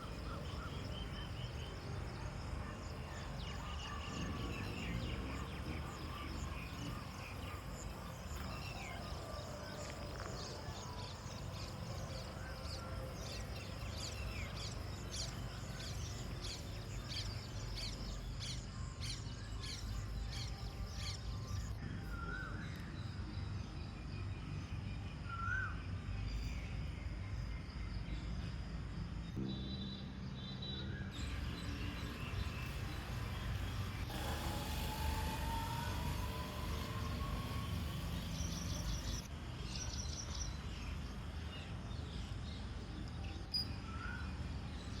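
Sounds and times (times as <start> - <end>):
birds chirping: 0.0 - 23.2.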